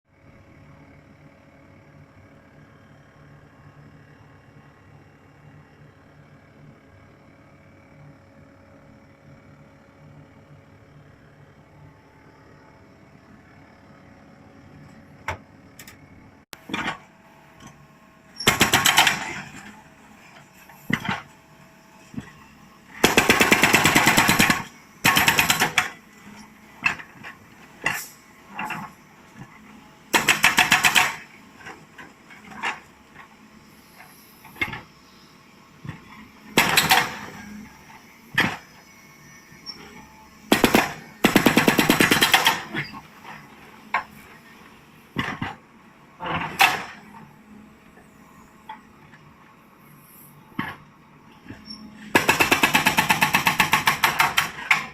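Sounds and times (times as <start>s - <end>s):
hydraulic rock breaker hammering: 30.2s - 31.3s, 52.2s - 54.9s.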